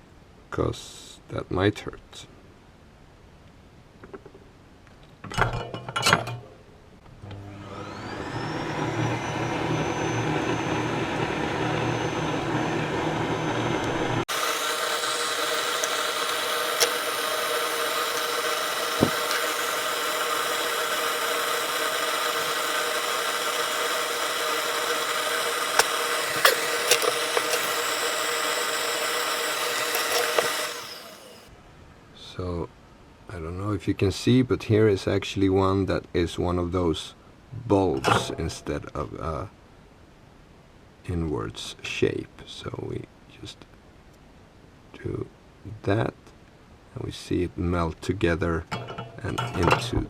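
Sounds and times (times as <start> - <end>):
small electric motor whirring: 7.3 - 31.5.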